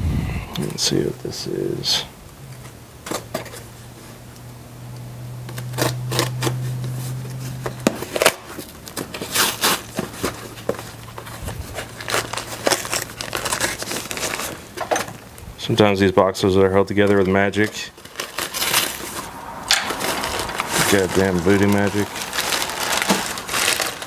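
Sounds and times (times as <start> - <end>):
steady low hum: 0.0 - 8.3
cardboard box tearing and crinkling: 5.5 - 14.8, 18.0 - 24.0.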